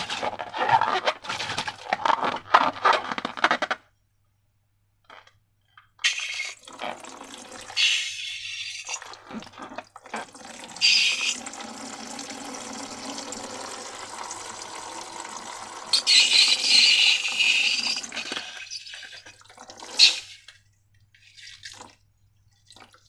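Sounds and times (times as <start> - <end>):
liquid pouring: 6.1 - 23.0.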